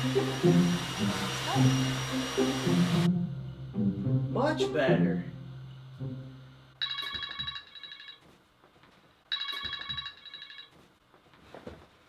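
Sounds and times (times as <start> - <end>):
phone ringtone trilling: 6.8 - 8.3, 9.3 - 10.8.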